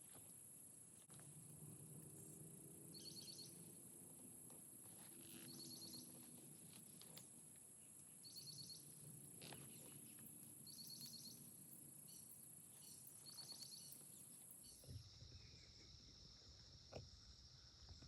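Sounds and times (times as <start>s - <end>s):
low-pitched insect trill: 0.0s - 18.0s
pulsed insect chirping: 2.1s - 3.8s, 4.7s - 6.3s, 8.0s - 18.0s
high-pitched insect buzz: 5.2s - 6.2s.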